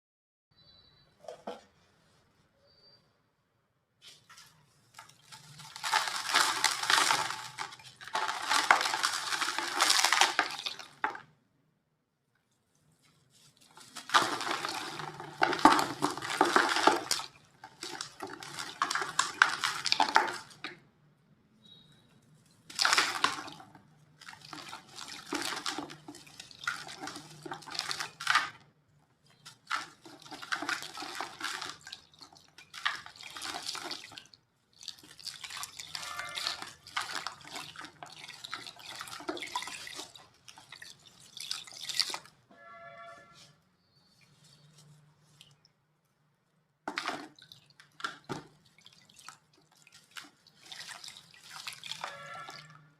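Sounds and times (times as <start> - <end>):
dry cement crumbling by hand: 5.0 - 11.3, 13.9 - 20.7.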